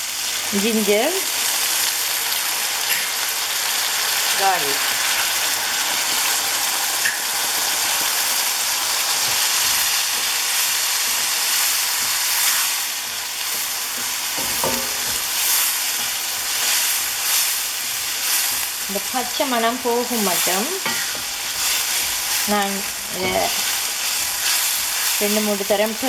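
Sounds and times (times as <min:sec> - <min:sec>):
vegetables sizzling in hot oil: 0:00.0 - 0:26.0
spoon stirring in a pan: 0:05.5 - 0:26.0.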